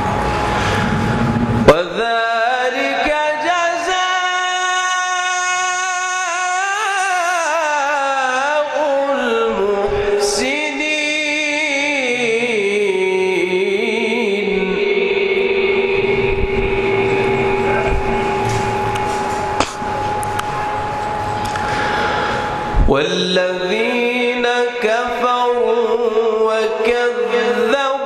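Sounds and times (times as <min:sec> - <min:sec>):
man reciting in melodic chant: 0:01.7 - 0:16.2, 0:22.9 - 0:28.0.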